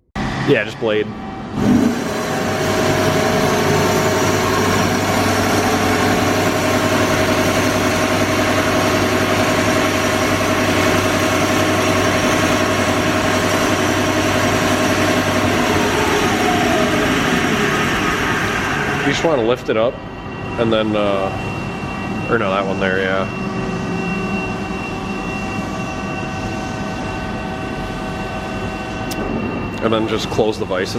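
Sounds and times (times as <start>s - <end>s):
band saw running: 1.6s - 19.5s.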